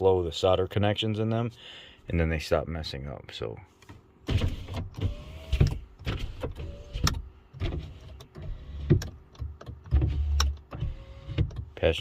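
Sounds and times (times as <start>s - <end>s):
electric motor hum and whine: 4.4s - 9.0s, 9.9s - 11.6s.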